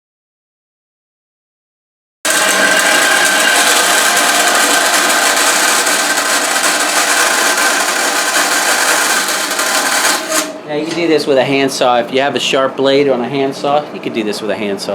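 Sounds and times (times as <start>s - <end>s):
bandsaw cutting metal: 2.3s - 10.7s.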